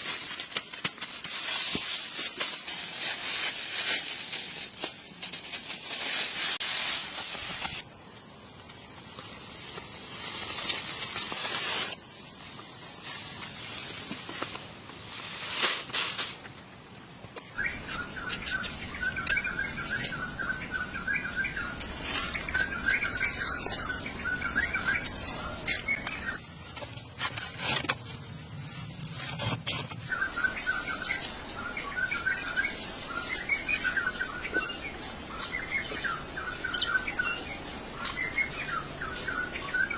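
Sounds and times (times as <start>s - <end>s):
hissing rustling noise: 0.0s - 39.9s
birds chirping: 17.4s - 26.5s, 29.3s - 39.9s.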